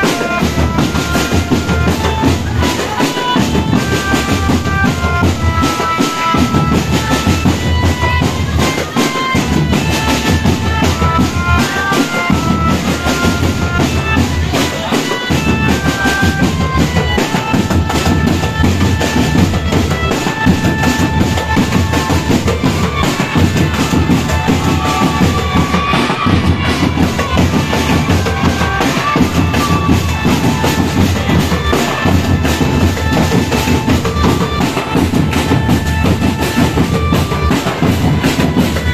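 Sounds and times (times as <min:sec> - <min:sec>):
held-note marching melody: 0:00.0 - 0:38.9
snare drums: 0:00.0 - 0:38.9.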